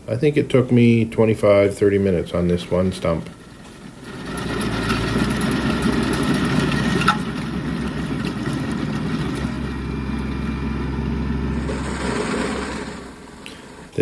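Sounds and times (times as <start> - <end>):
tractor diesel engine and stump grinder drone: 2.7 - 14.0.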